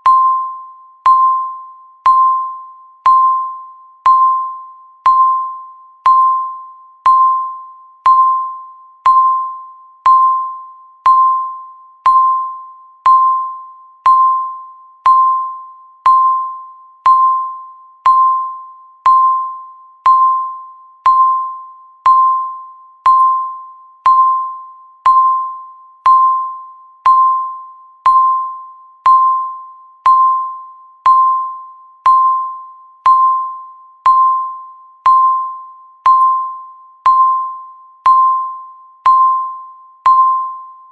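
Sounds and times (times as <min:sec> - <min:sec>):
timer beeping: 0:00.0 - 0:40.9.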